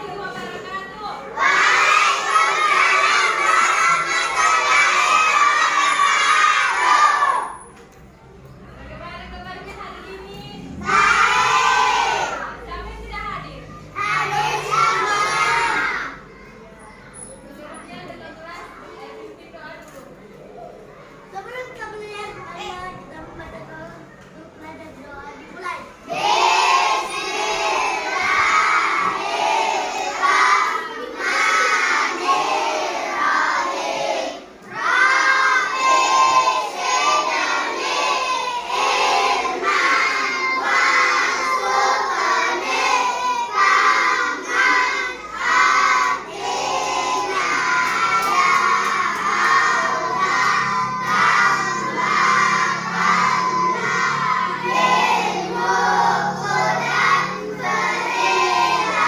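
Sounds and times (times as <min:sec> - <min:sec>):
children singing in unison: 0:01.3 - 0:07.6, 0:10.6 - 0:12.6, 0:13.9 - 0:16.2, 0:26.0 - 0:59.0.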